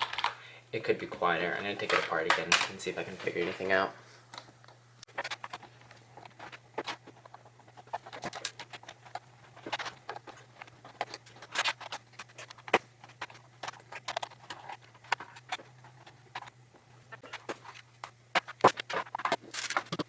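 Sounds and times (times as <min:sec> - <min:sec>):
plastic keyboard clicks and scrapes: 0:04.4 - 0:20.0.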